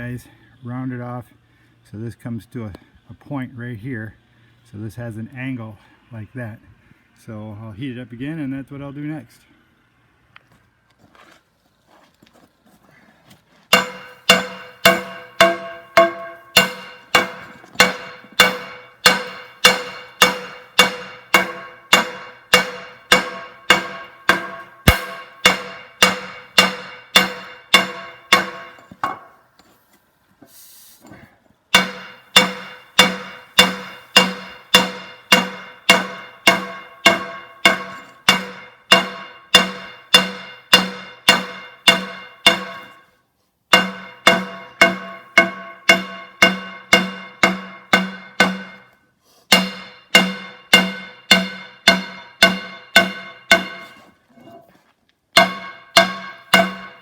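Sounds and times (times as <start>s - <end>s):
hammer striking steel on anvil: 13.7s - 29.4s, 31.7s - 43.0s, 43.7s - 54.1s, 55.4s - 57.0s.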